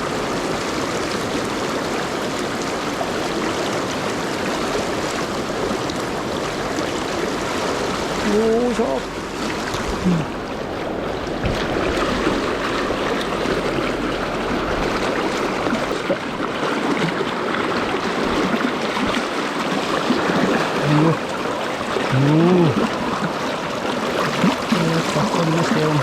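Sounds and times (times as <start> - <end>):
river current rushing: 0.0 - 26.0
short voice-like sounds: 10.0 - 10.4.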